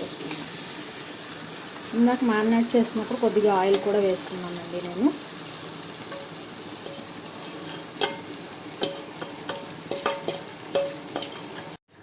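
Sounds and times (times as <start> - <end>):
chicken sizzling in oil: 0.0 - 12.0
spatula scraping metal pan: 6.1 - 11.8.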